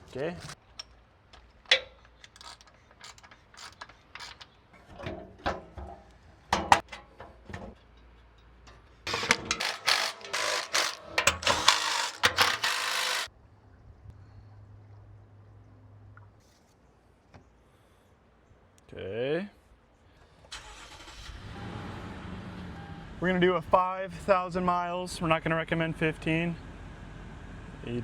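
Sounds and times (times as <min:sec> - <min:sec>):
ratchet wrench clicking: 0:01.7 - 0:04.5, 0:09.1 - 0:13.3.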